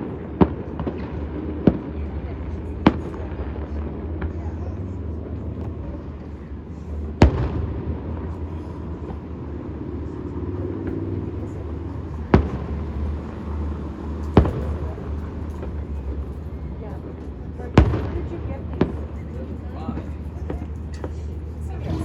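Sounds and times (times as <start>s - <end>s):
fireworks bangs with echo: 0.0s - 22.0s.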